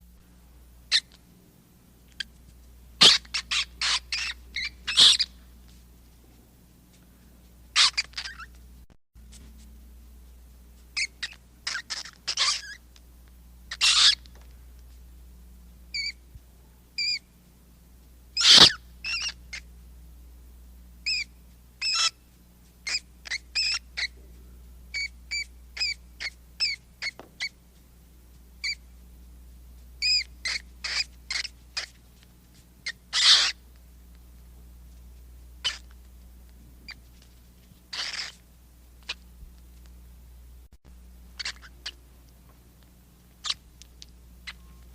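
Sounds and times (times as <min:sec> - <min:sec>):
rat squeaking: 0:00.9 - 0:01.2, 0:02.1 - 0:05.4, 0:07.7 - 0:08.6, 0:10.8 - 0:12.9, 0:13.7 - 0:14.5, 0:15.9 - 0:16.3, 0:17.0 - 0:17.3, 0:18.4 - 0:19.7, 0:21.0 - 0:24.2, 0:24.9 - 0:27.6, 0:28.6 - 0:28.9, 0:30.0 - 0:33.8, 0:35.6 - 0:36.1, 0:36.9 - 0:39.3, 0:41.4 - 0:42.1, 0:43.2 - 0:44.9.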